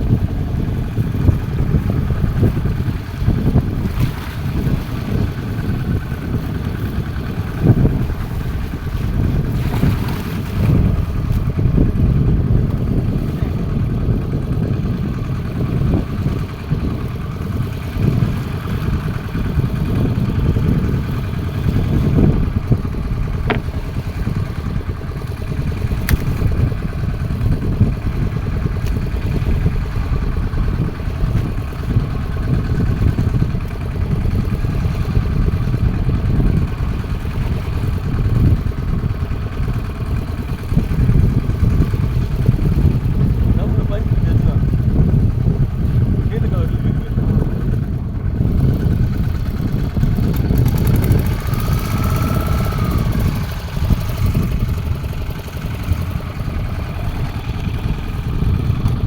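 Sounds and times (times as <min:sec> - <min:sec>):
boat engine low rumble: 0:00.0 - 0:59.0
wind on microphone: 0:00.0 - 0:59.0.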